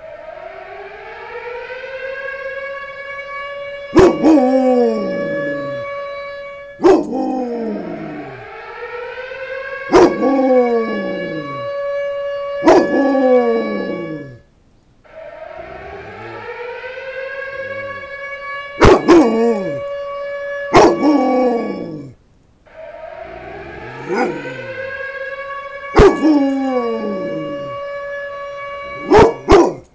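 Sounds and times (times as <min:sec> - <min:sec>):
dog howling: 0:03.9 - 0:06.0, 0:06.8 - 0:08.5, 0:09.8 - 0:11.8, 0:12.6 - 0:14.4, 0:15.3 - 0:16.8, 0:17.4 - 0:20.0, 0:20.7 - 0:22.2, 0:22.8 - 0:27.9, 0:28.8 - 0:29.9
dog yipping: 0:29.1 - 0:29.8.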